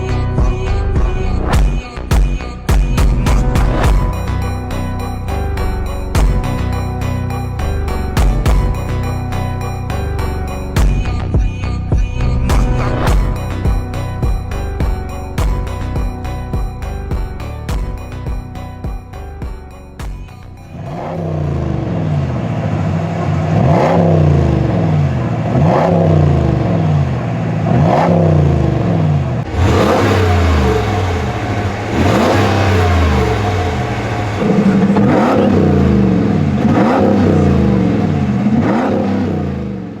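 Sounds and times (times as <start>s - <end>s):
pickup engine revving: 2.9s - 10.8s, 20.7s - 40.0s.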